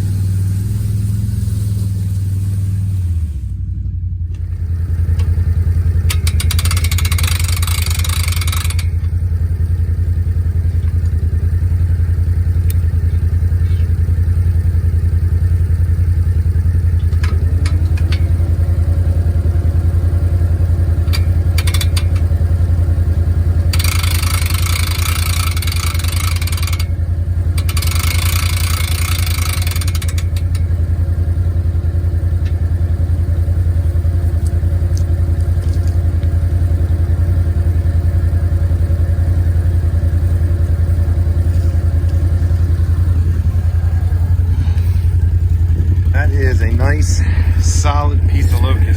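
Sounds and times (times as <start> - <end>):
hissing noise: 0.0 - 3.3, 42.4 - 48.9
atv engine under load: 0.0 - 48.9.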